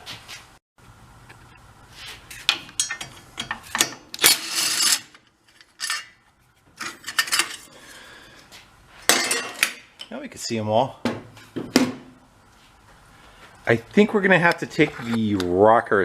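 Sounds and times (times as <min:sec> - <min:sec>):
metal engine parts clinking: 0:02.4 - 0:06.2, 0:06.8 - 0:07.7.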